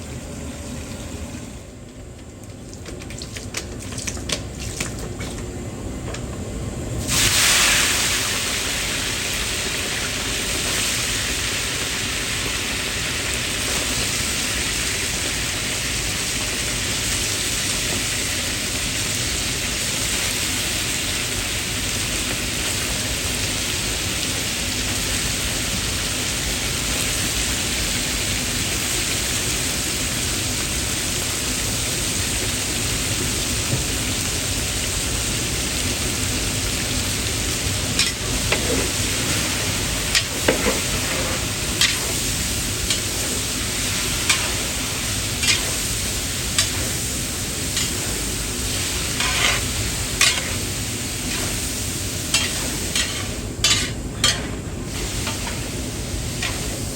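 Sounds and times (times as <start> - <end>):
food sizzling in pot: 7.0 - 56.9
utensil scraping pot: 45.4 - 45.8, 49.2 - 50.7, 52.3 - 54.6.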